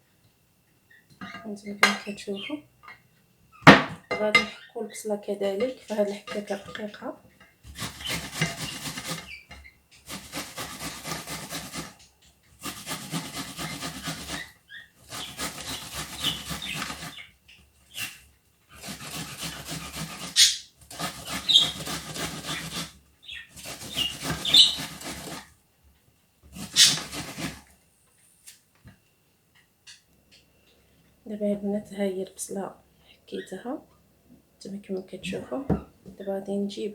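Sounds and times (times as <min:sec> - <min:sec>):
onion being grated: 0:07.6 - 0:25.5, 0:26.5 - 0:27.7.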